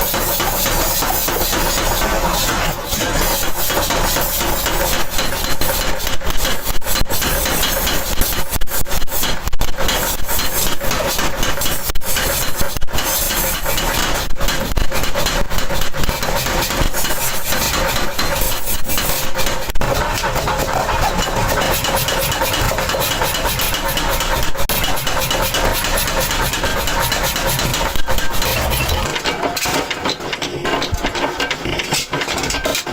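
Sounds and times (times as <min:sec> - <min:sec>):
sharp knocks and clatters: 0:00.0 - 0:32.9
workshop machinery humming: 0:16.0 - 0:32.2.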